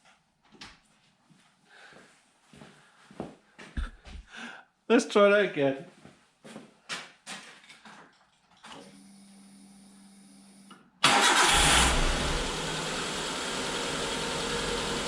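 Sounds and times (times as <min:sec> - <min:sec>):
car engine starting and idling: 0:11.0 - 0:15.0.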